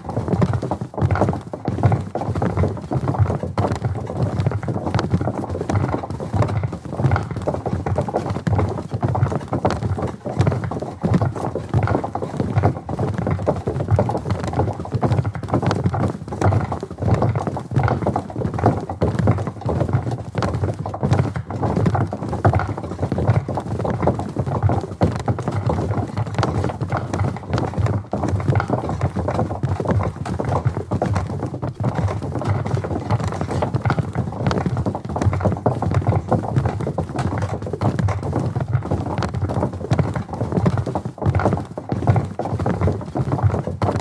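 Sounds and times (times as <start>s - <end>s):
boots marching on wooden bridge: 0.0s - 44.0s.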